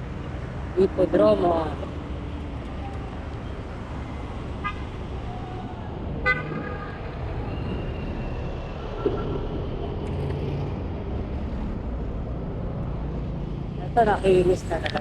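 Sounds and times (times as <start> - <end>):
road traffic: 0.0 - 15.0
car horn toot: 6.2 - 7.0.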